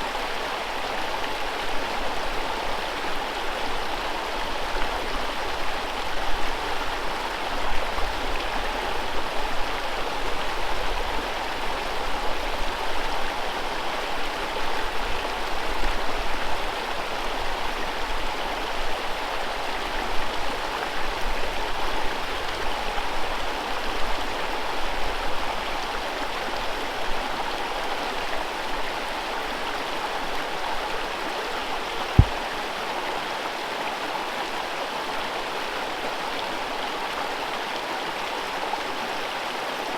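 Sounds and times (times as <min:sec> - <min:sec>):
short low thump: 0:32.2 - 0:32.4.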